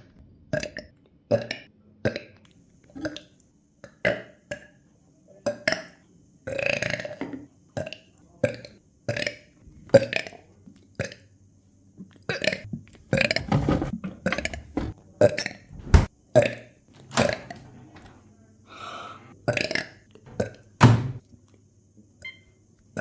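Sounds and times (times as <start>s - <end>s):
person burping: 0.6s - 2.3s, 12.3s - 13.5s, 16.4s - 17.5s, 19.4s - 20.6s.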